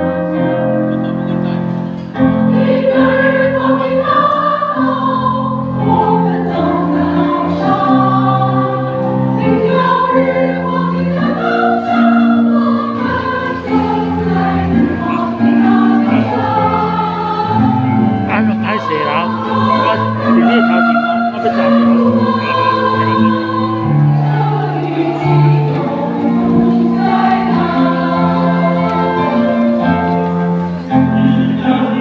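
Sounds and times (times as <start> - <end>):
choir singing: 2.2 - 32.0
sustained low accompanying notes: 13.2 - 32.0.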